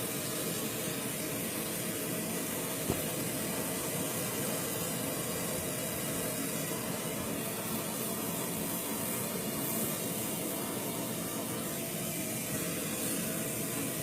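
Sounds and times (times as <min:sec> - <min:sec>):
propane torch hissing: 0:00.0 - 0:14.0.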